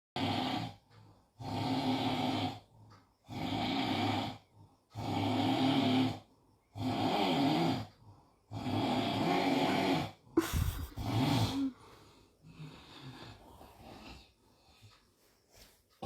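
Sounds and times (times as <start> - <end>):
man snoring: 0.2 - 11.8.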